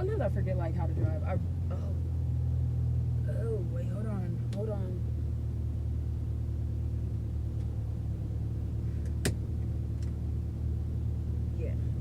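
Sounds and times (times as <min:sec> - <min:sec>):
car engine hum inside cabin: 0:00.0 - 0:12.0.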